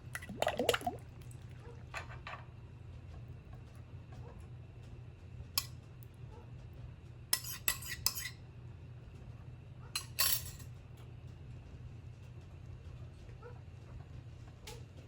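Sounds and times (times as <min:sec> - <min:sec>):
metal utensils and dishes clattering: 0:10.0 - 0:10.6.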